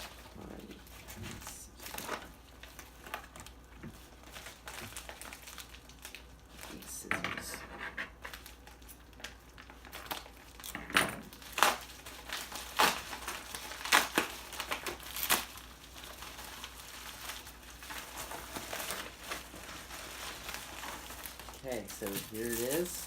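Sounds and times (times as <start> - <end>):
packaging crinkling and rustling: 0.0 - 23.0.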